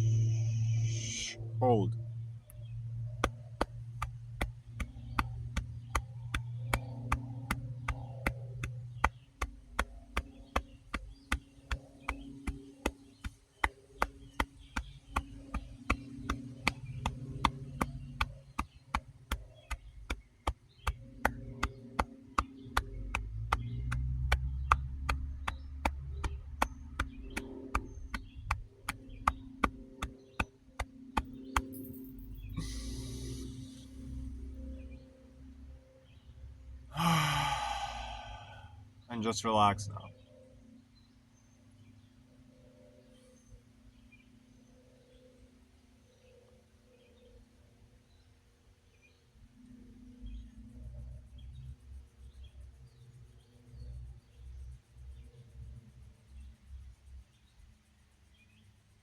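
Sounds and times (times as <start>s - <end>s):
steady ticking: 0.0s - 34.3s
low held music tones: 0.0s - 36.9s.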